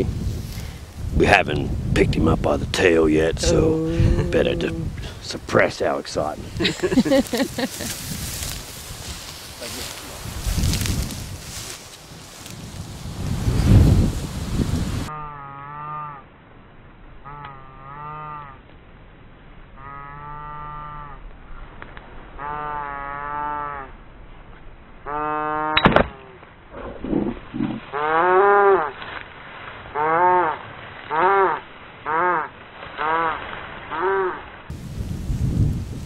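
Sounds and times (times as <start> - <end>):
livestock calling: 3.4 - 5.1.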